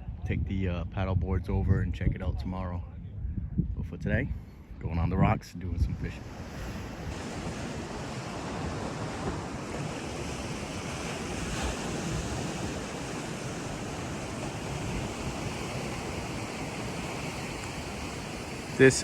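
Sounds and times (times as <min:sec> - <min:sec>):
wind buffeting microphone: 0:00.0 - 0:19.0
fast tidal current: 0:06.0 - 0:19.0
ocean surf rushing: 0:06.0 - 0:19.0.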